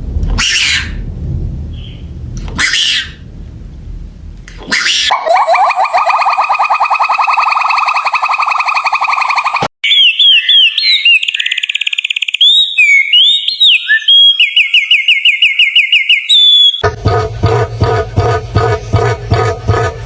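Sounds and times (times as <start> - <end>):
rapidly pulsing animal call: 4.7 - 9.7
alarm-like whistles and trills: 5.1 - 16.8.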